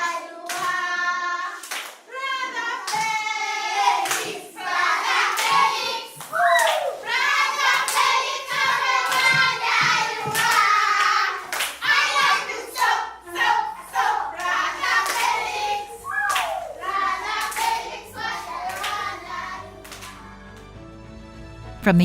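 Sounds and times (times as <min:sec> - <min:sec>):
children singing together: 0:00.0 - 0:20.2
hands clapping: 0:00.4 - 0:00.8, 0:01.6 - 0:02.0, 0:02.8 - 0:03.2, 0:04.0 - 0:13.0, 0:14.0 - 0:15.5, 0:16.2 - 0:20.8.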